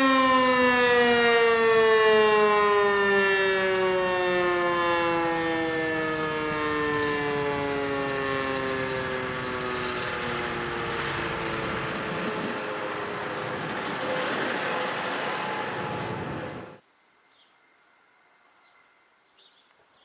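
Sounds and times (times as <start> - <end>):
warning siren winding down: 0.0 - 16.8
steady rushing noise: 9.3 - 16.8.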